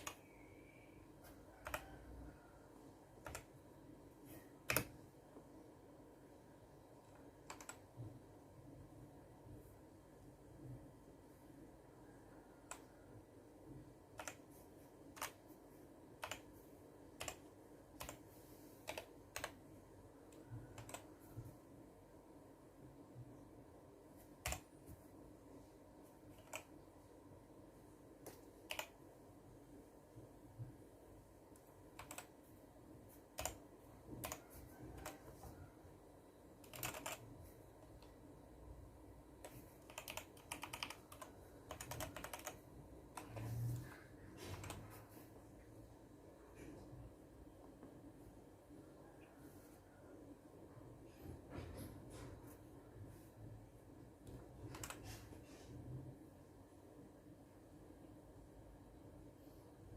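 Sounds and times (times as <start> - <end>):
mechanical keyboard key clicks: 39.9 - 42.6.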